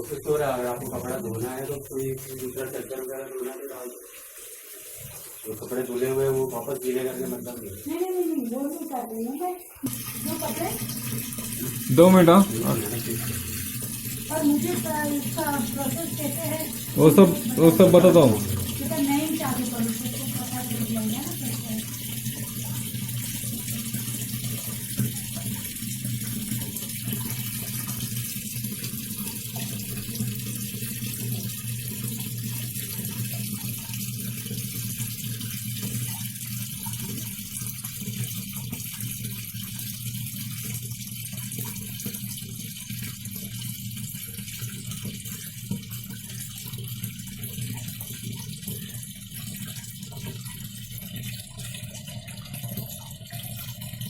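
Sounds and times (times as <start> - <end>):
washing machine low hum: 0.0 - 54.0
water rushing into tub: 0.0 - 54.0.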